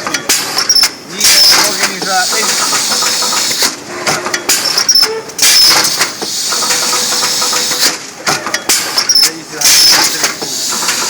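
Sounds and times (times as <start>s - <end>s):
machine clicks and knocks: 0.0s - 11.0s
cutting machine hiss: 1.2s - 3.8s, 5.4s - 8.0s, 9.6s - 11.0s.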